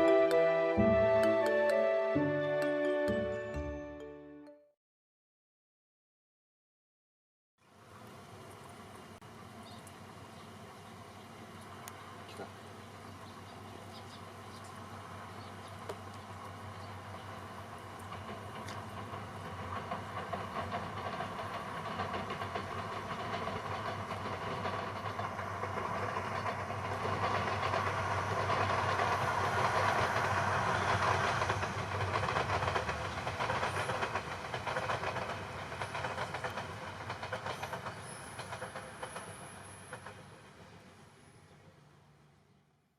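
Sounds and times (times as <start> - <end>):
train passing on rails: 0.0 - 4.1, 7.7 - 42.5.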